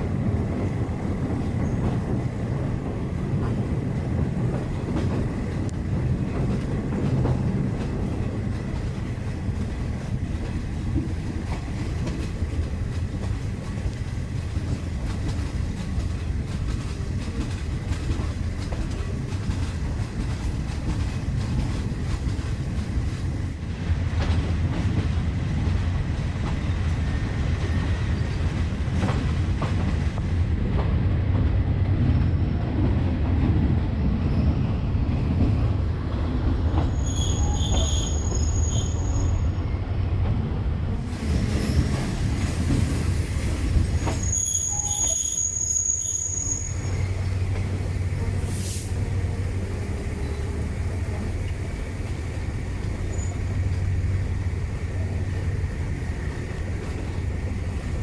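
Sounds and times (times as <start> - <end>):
train wheels rumbling on rail: 0.0 - 58.0
high-pitched wheel squeal: 36.9 - 39.5, 44.0 - 47.3.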